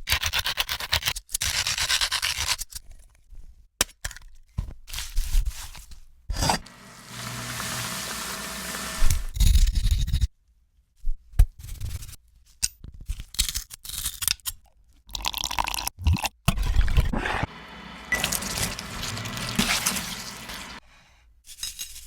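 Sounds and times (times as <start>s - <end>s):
food crunching and scraping: 16.6s - 20.8s.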